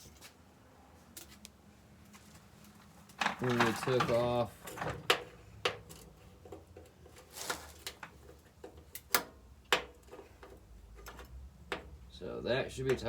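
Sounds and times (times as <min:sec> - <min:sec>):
tools and metal parts clicking: 0:03.0 - 0:12.0.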